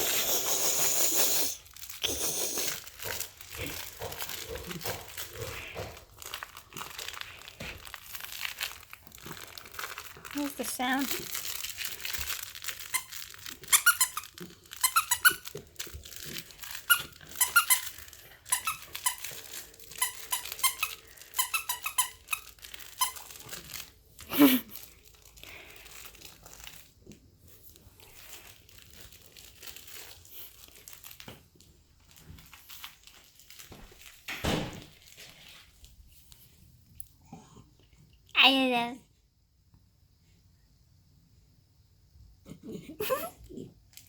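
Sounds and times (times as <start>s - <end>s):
crinkling: 0.0s - 37.1s, 43.5s - 44.0s
squeaky toy squeaking: 12.9s - 15.5s, 16.8s - 19.3s, 20.0s - 23.2s.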